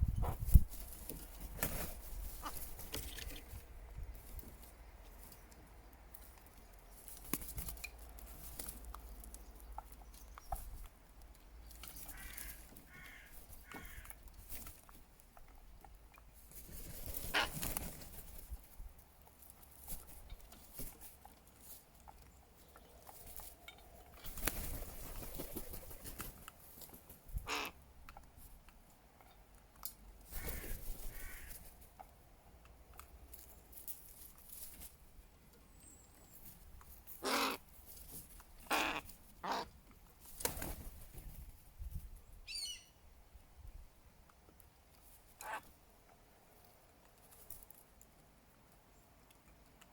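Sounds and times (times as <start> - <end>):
crows cawing: 12.1 - 14.2, 27.5 - 27.8, 30.4 - 31.7, 37.2 - 37.6, 38.7 - 39.7.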